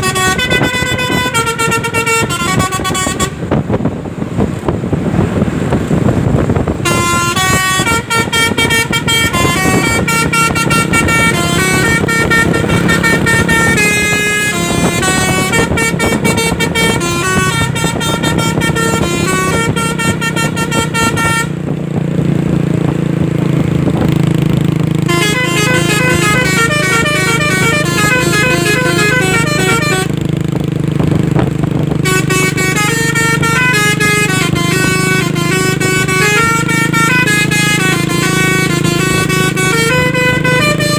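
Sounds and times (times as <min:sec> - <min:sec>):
musical air horns melody: 0:00.0 - 0:03.5, 0:06.8 - 0:21.7, 0:25.0 - 0:30.3, 0:32.0 - 0:40.9
engine drone: 0:00.0 - 0:40.9.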